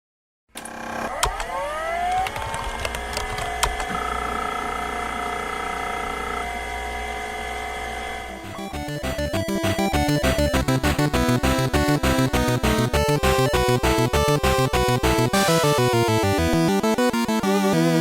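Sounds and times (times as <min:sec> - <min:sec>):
small motor whining: 0:00.6 - 0:08.8.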